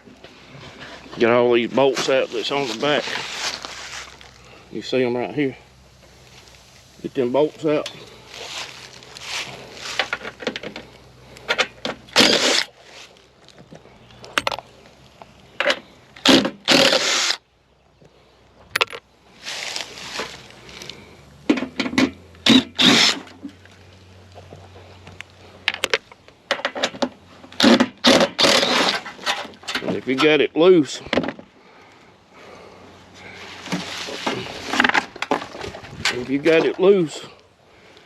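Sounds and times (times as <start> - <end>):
hand tools scraping and clanking metal: 0.0 - 14.7, 24.4 - 31.4, 33.2 - 37.4.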